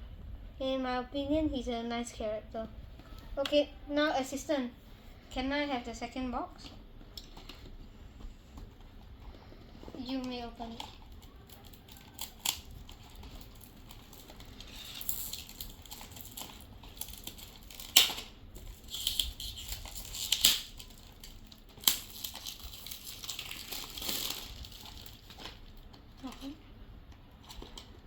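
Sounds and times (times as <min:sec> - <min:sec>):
packaging crinkling and tearing: 0:06.6 - 0:28.0.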